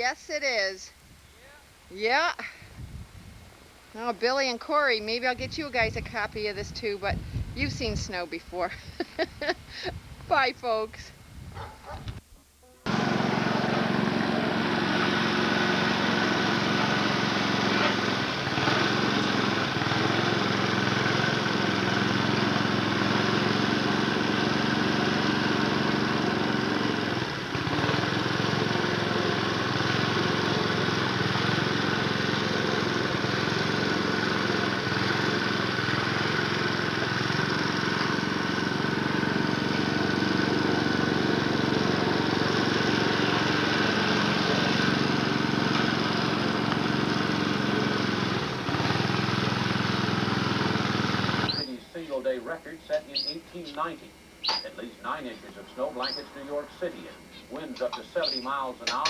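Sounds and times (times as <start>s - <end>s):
small engine running steadily: 12.8s - 51.8s, 53.1s - 53.4s, 54.4s - 59.0s.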